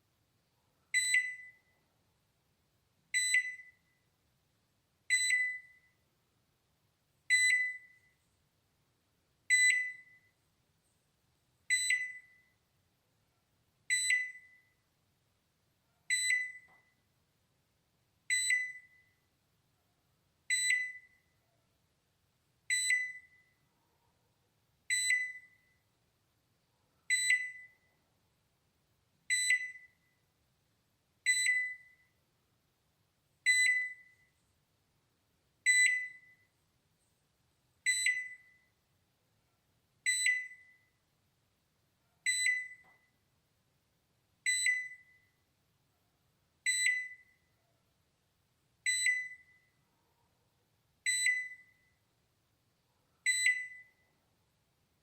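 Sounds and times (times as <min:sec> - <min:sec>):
microwave timer ding: 0:05.1 - 0:05.8, 0:07.3 - 0:08.0, 0:09.5 - 0:10.2, 0:11.7 - 0:12.4, 0:18.3 - 0:19.0, 0:51.1 - 0:51.8, 0:53.3 - 0:53.9.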